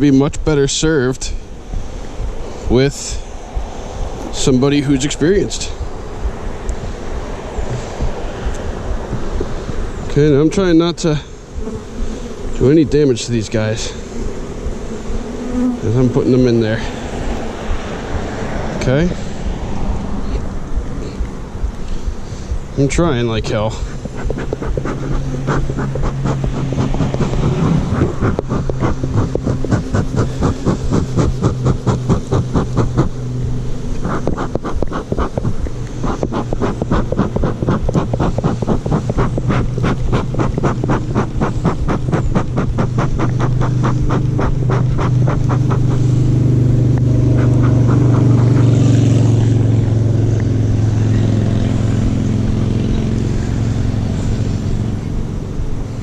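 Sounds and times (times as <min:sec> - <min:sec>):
honeybees buzzing: 0:00.0 - 0:56.0.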